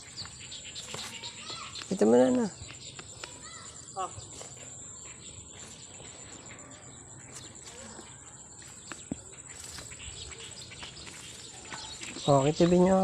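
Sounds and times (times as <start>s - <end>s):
insect trill: 0.0s - 13.0s
small clicks and light chirps: 1.7s - 3.4s.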